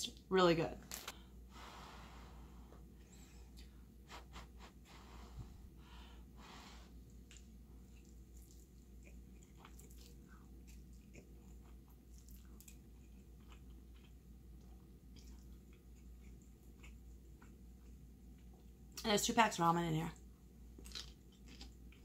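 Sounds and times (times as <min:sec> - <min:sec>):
faint low hum: 0:00.0 - 0:22.0
chewing noodles: 0:07.1 - 0:19.0, 0:20.2 - 0:22.0.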